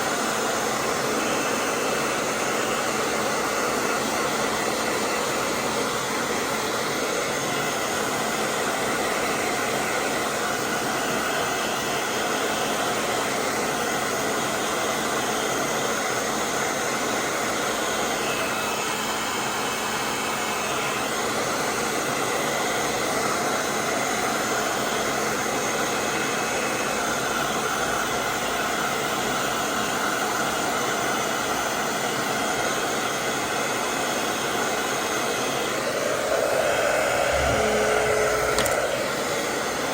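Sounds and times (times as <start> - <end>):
air rushing: 35.8 - 39.6
faint thin tone: 36.0 - 39.4.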